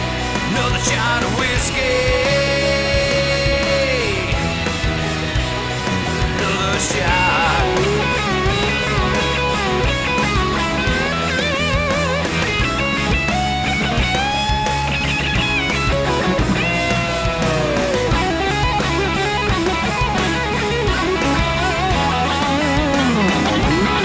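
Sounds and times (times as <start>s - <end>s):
bass and steady beat: 0.0s - 24.0s
electric guitar solo: 7.9s - 24.0s.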